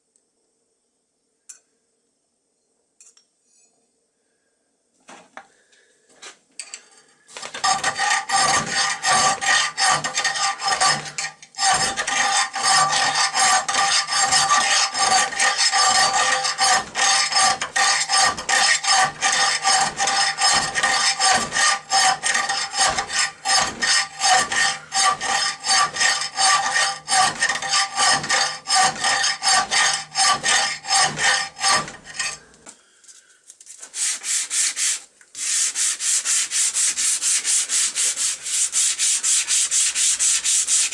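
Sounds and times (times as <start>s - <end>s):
file rasping on steel: 7.6s - 32.5s, 33.9s - 40.9s.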